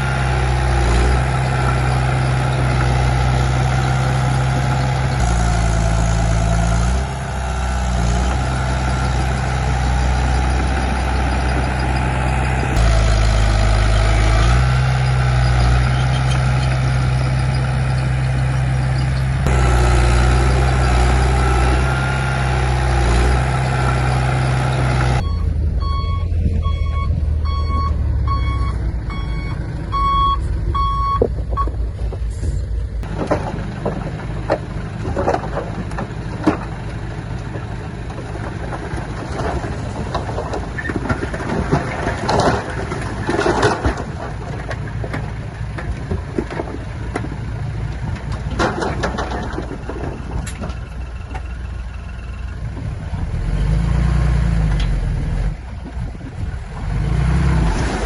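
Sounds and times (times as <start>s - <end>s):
diesel engine running: 0.0s - 58.0s
backup alarm beeping: 25.2s - 31.8s.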